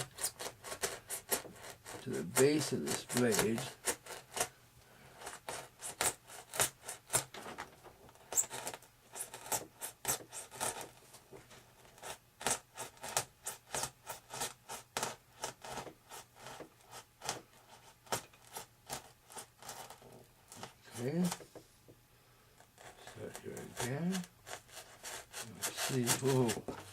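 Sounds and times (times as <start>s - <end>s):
hobby knife sawing material: 0.0s - 4.5s, 5.2s - 7.3s, 8.4s - 10.9s, 22.8s - 26.9s.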